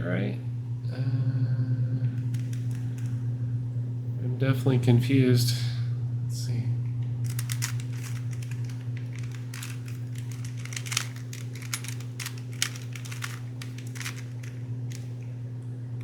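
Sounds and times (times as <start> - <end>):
steady low hum: 0.0 - 16.0
plastic puzzle cube clicking: 7.3 - 15.0.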